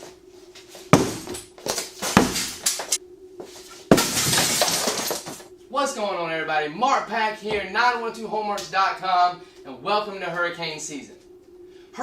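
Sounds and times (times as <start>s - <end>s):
glass breaking crash: 2.2s - 2.9s, 3.9s - 5.4s.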